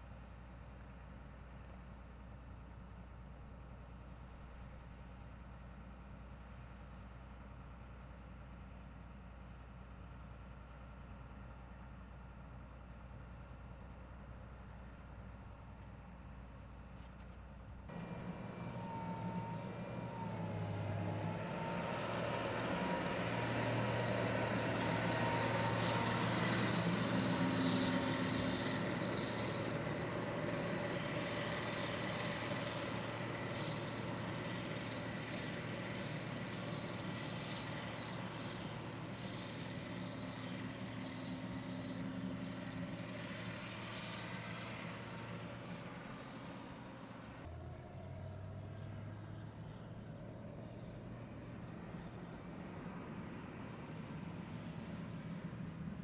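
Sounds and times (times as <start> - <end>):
harvest machinery humming: 17.0 - 56.0.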